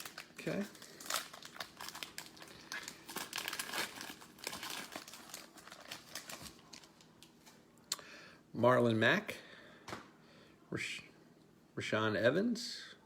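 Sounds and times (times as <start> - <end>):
foil wrapper crinkling and tearing: 0.0 - 7.4.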